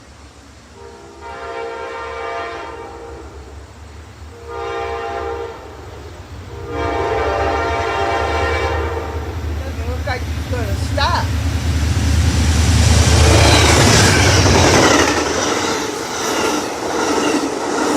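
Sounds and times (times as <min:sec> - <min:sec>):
train low rumble: 0:00.0 - 0:17.9
locomotive horn blasts: 0:00.8 - 0:03.5, 0:04.3 - 0:05.9, 0:06.5 - 0:09.4.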